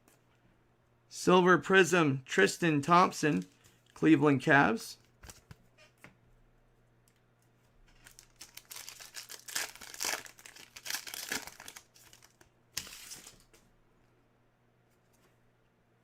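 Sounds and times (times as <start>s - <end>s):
plastic wrapper crinkling and tearing: 7.9s - 13.5s.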